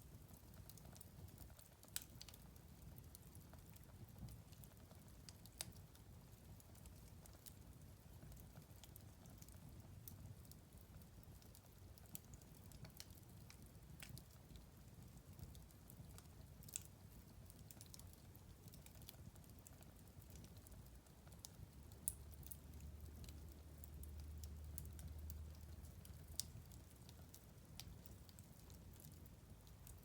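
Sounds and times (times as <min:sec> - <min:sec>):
wood fire crackling: 0:00.0 - 0:30.0.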